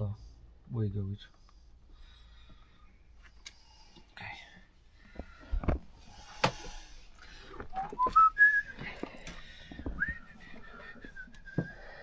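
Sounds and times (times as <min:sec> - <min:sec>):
person whistling: 0:07.7 - 0:08.9, 0:10.0 - 0:12.0.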